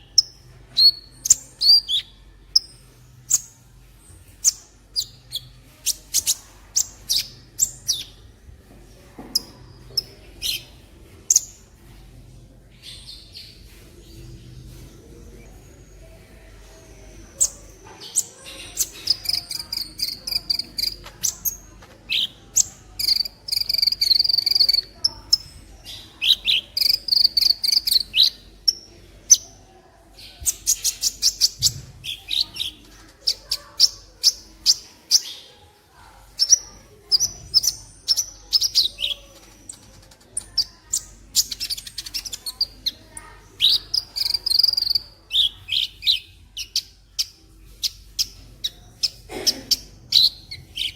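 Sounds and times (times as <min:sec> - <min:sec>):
bird chattering trills: 0:17.4 - 0:29.4, 0:36.4 - 0:50.9.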